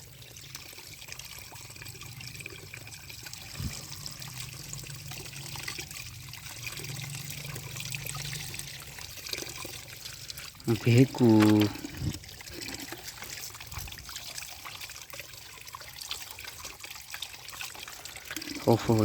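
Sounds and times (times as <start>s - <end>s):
water running over toys: 0.0s - 19.0s
low steady hum: 0.7s - 12.7s.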